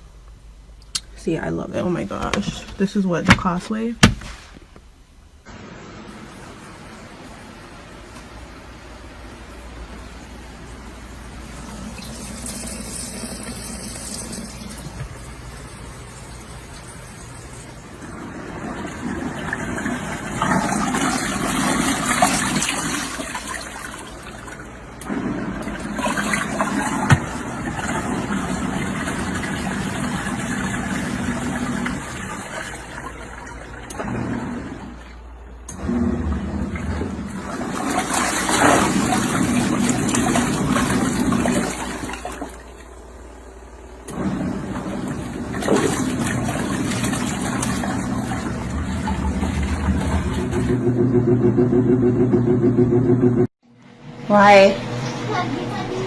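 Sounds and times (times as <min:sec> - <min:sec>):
water rushing and splashing in tub: 0:09.0 - 0:50.8.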